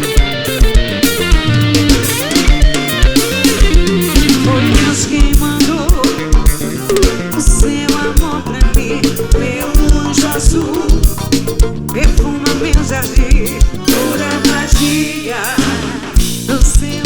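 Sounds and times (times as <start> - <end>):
live band instrumental music: 0.0 - 17.0.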